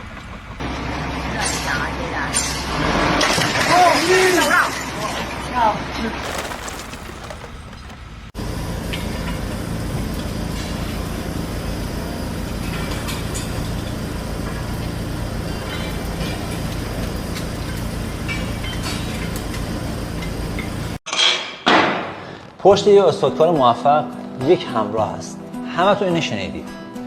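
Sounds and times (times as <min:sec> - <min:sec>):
heavy machine rumbling: 0:06.2 - 0:08.3
knocks and clatter: 0:06.2 - 0:08.4.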